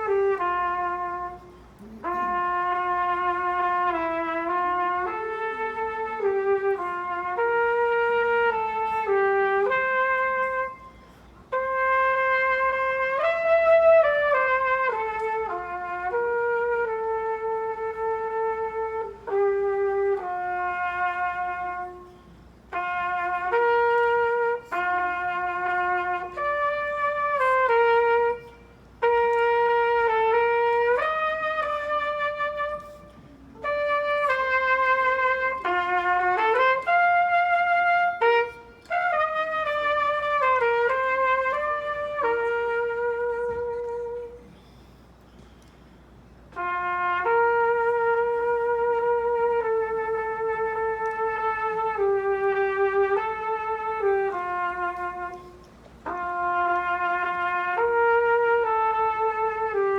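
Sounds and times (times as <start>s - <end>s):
solo brass hymn tune: 0.0s - 59.9s.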